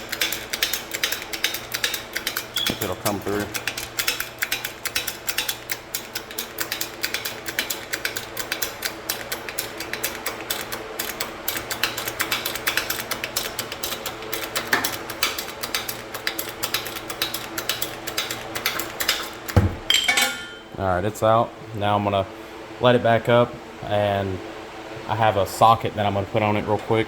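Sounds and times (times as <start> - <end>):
hydraulic press clicking and creaking: 0.0 - 19.6.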